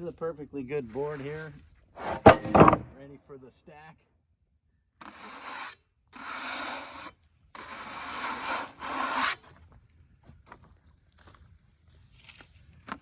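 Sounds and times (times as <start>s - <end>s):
wood scraping on wood: 0.9s - 3.0s.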